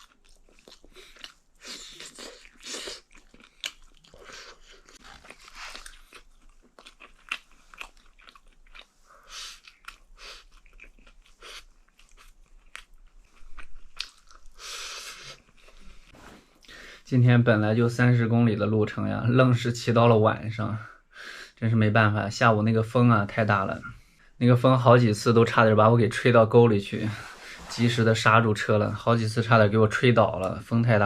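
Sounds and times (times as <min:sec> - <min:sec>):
person crunching food: 0:00.0 - 0:16.0.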